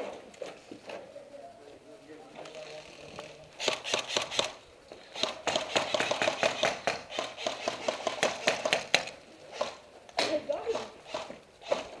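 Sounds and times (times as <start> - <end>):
airsoft guns firing: 3.6 - 12.0.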